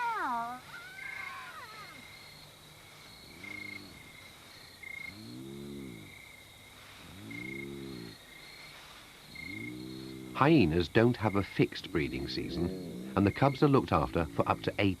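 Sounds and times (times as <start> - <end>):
hyenas calling: 0.0 - 2.1, 9.4 - 15.0.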